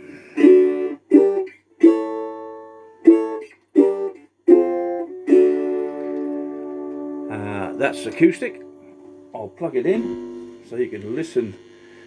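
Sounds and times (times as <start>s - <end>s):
resonator guitar strummed: 0.4s - 12.0s.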